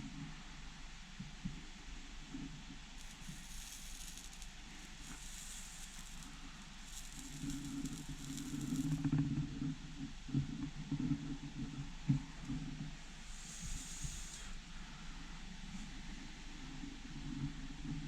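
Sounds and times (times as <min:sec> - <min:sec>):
solder sizzling and crackling: 0:03.0 - 0:09.2, 0:13.2 - 0:14.6.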